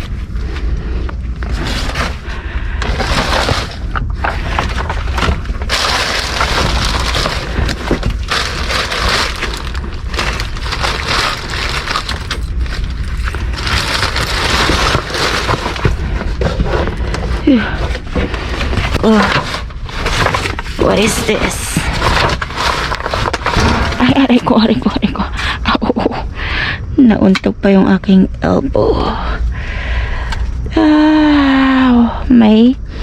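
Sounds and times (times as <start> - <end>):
plastic bags rustling: 0.0 - 26.1
steady low rumble: 0.0 - 33.0.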